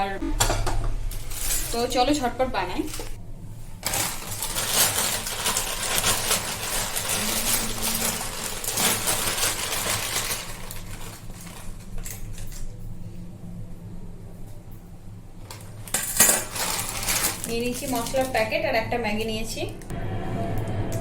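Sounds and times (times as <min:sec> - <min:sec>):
food packets crackling: 0:01.2 - 0:12.8, 0:15.5 - 0:18.7
utensils clicking: 0:03.8 - 0:12.8.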